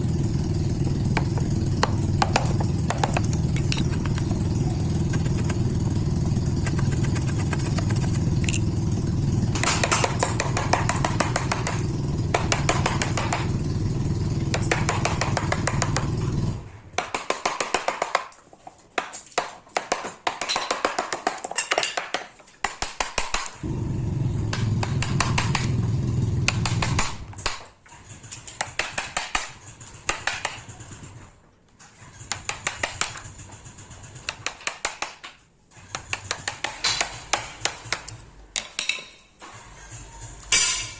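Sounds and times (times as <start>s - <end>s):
machine motor humming: 0.0s - 16.6s, 23.6s - 27.2s
fast sharp clicks: 5.0s - 5.8s, 6.5s - 8.7s.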